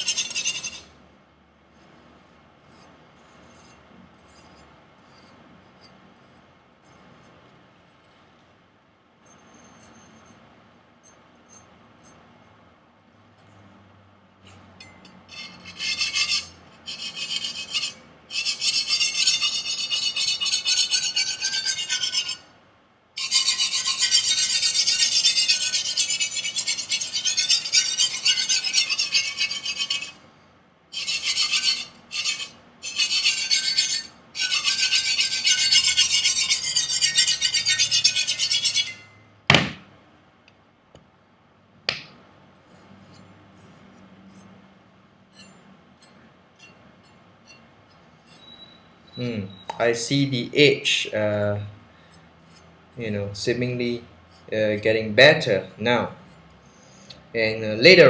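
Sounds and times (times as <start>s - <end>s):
knife edge rasped on abrasive: 0.0s - 0.9s, 15.3s - 22.4s, 23.2s - 30.2s, 31.0s - 39.1s, 45.3s - 46.8s.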